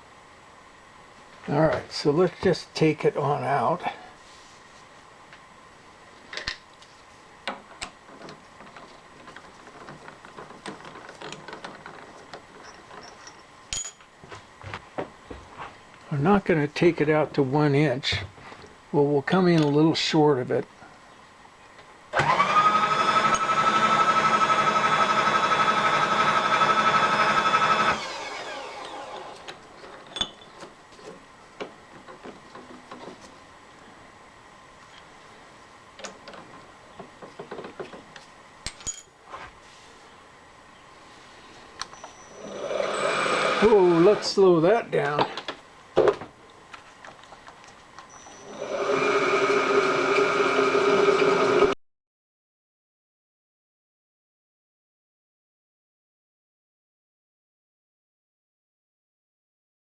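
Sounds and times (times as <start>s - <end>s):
milling machine motor whining: 22.2s - 29.5s, 42.3s - 44.4s, 48.4s - 51.8s.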